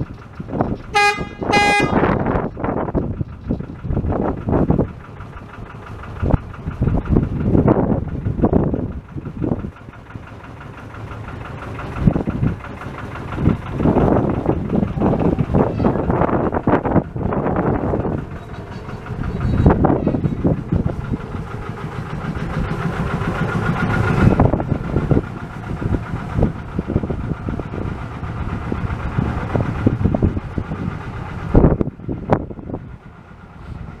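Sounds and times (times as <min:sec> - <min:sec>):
wind gusting on microphone: 0:00.0 - 0:05.4, 0:06.0 - 0:09.8, 0:11.9 - 0:34.0
steam locomotive rumbling: 0:00.0 - 0:34.0.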